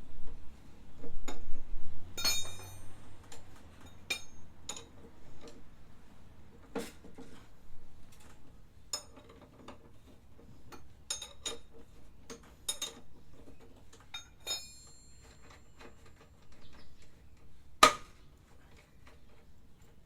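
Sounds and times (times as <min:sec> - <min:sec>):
ringing metallic clink: 0:02.2 - 0:03.1, 0:14.2 - 0:15.6
metal hand tools clinking: 0:02.2 - 0:04.9, 0:14.1 - 0:16.2.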